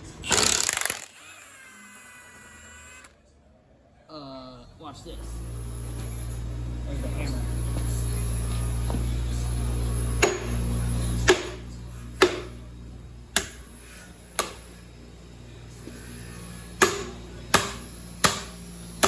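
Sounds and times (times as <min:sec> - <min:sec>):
steady low hum: 0:04.7 - 0:19.0
hammer striking metal: 0:10.2 - 0:12.7, 0:13.3 - 0:14.8, 0:16.7 - 0:19.0.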